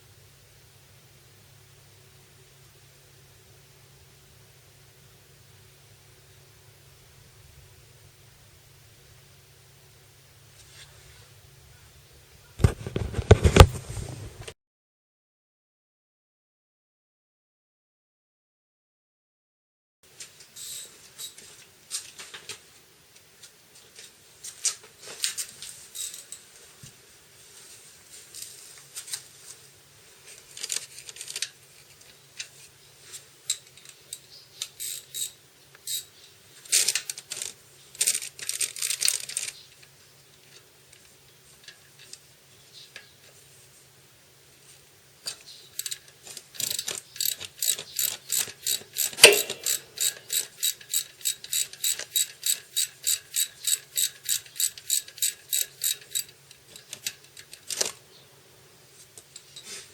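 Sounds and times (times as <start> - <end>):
ratchet wrench clicking: 33.5 - 36.1, 45.8 - 57.6.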